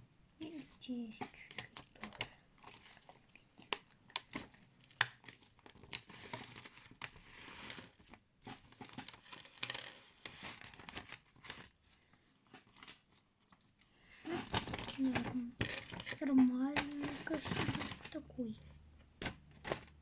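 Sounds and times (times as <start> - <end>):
paper rustling and crinkling: 8.5 - 13.6.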